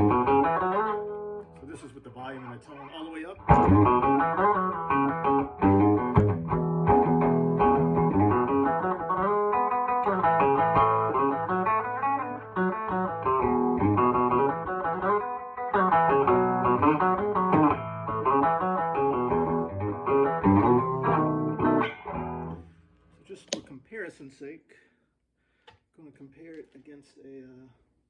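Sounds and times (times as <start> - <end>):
amplified electric guitar: 0.0 - 2.0, 3.3 - 22.8.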